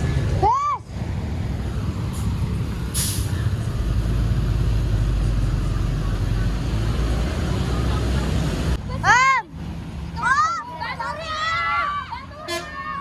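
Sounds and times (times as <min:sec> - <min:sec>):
bus engine rumbling: 0:00.0 - 0:13.0
air brake hiss: 0:02.9 - 0:03.4.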